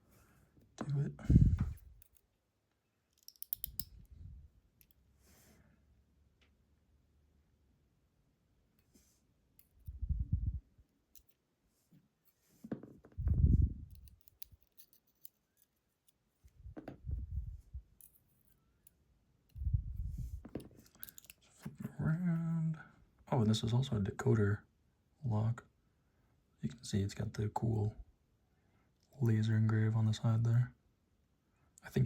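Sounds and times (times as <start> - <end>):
small metal clicks: 2.0 - 2.3, 3.1 - 4.1, 11.1 - 11.4, 13.9 - 16.6, 20.8 - 21.5.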